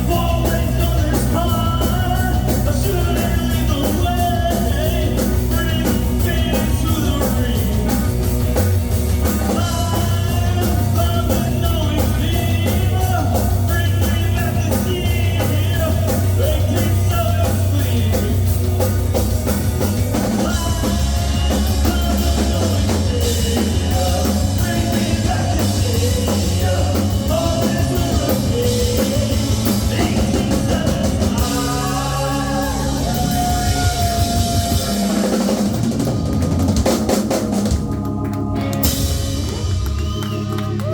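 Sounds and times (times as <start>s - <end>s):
drum kit: 0.0s - 40.9s
rock music with singing: 0.0s - 40.9s.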